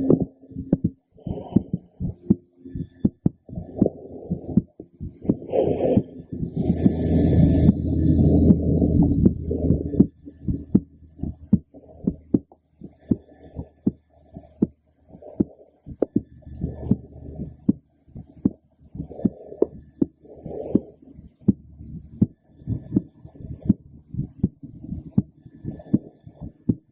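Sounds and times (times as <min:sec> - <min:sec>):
heartbeat through stethoscope: 0:00.0 - 0:26.9.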